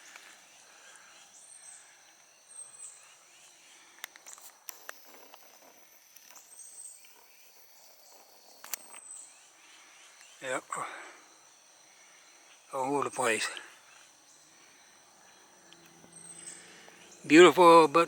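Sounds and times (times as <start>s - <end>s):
insects trilling: 0.0s - 18.0s.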